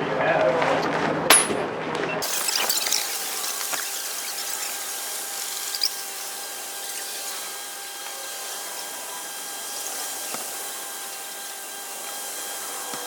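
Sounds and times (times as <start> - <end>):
steady mechanical hum: 0.0 - 13.0
high hiss: 2.2 - 11.3.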